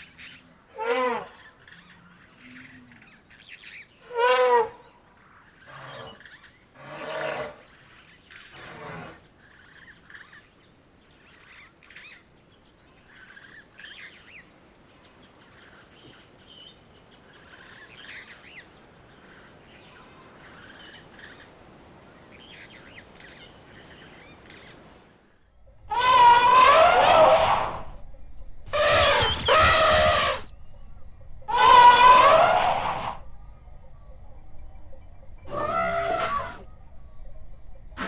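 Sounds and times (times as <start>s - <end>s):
outdoor background hiss: 0.0s - 38.0s
faint bird chirps: 27.3s - 38.0s
short loud animal calls: 28.7s - 30.5s.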